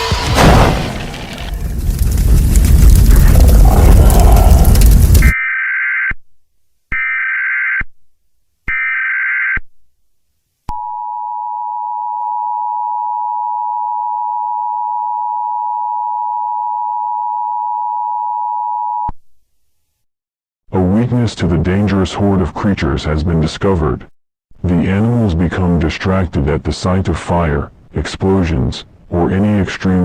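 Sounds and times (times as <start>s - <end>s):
loud noisy crash: 0.0s - 5.3s.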